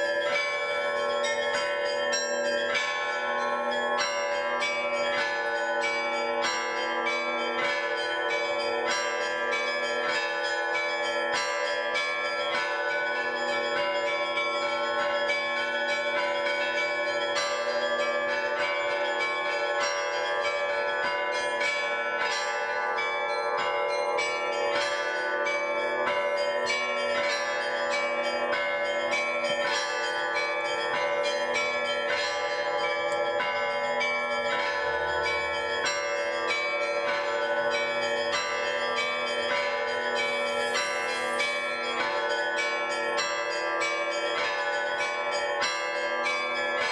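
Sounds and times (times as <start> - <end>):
church bells pealing: 0.0 - 46.9.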